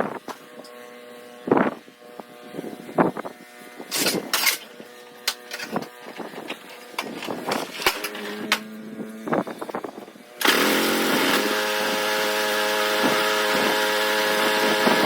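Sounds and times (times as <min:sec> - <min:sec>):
snowblower engine running: 0:00.2 - 0:15.0
short loud bursts of noise: 0:06.9 - 0:15.0.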